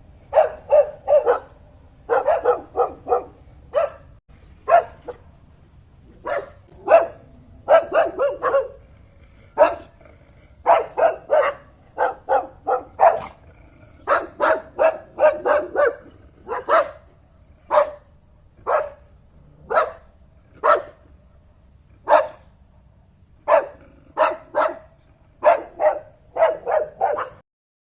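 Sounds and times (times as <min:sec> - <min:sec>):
dog barking: 0:00.3 - 0:05.2, 0:06.2 - 0:08.8, 0:09.6 - 0:09.9, 0:10.6 - 0:13.4, 0:14.1 - 0:17.0, 0:17.7 - 0:19.0, 0:19.7 - 0:21.0, 0:22.0 - 0:22.5, 0:23.4 - 0:27.4.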